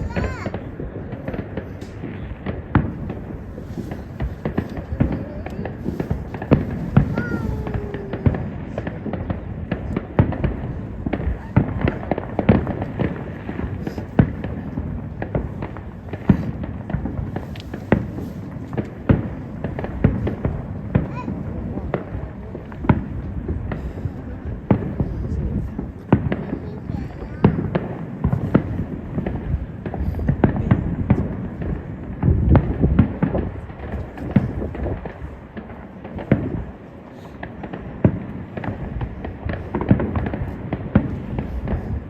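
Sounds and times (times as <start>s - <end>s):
deep firework booms: 0.0s - 42.0s
fireworks launching and exploding: 0.0s - 42.0s
sharp firework cracks: 0.0s - 42.0s.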